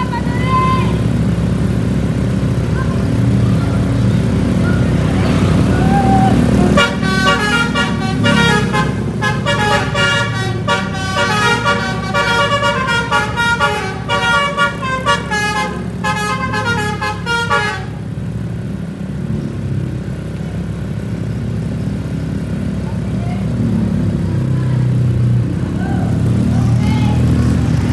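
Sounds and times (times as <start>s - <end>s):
bus engine running: 0.0s - 27.9s
bus horn playing melody: 6.6s - 18.1s.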